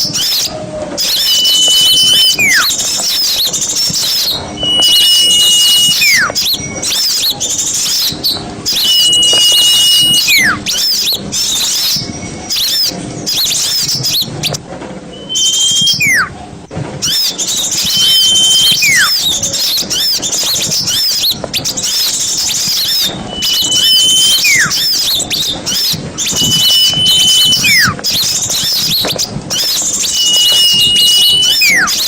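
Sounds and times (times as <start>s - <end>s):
songbirds chattering: 0.0s - 32.0s
high whistle falling in pitch: 1.0s - 3.4s, 4.2s - 7.1s, 8.7s - 10.8s, 15.2s - 16.4s, 17.8s - 19.3s, 22.5s - 28.0s, 29.5s - 32.0s.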